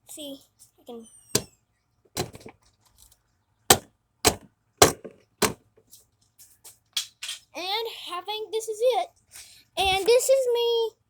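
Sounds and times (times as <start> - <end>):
plastic cracking: 2.2 - 2.6, 3.7 - 5.6.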